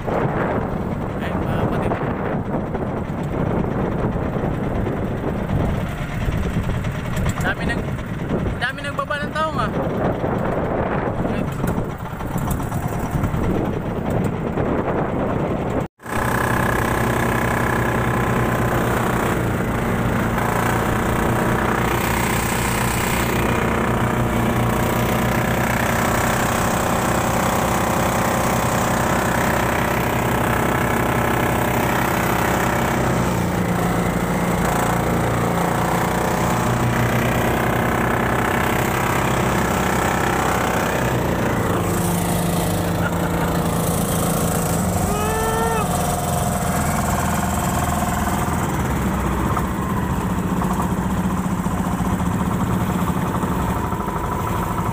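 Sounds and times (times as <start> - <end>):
small engine running: 0.0 - 54.9.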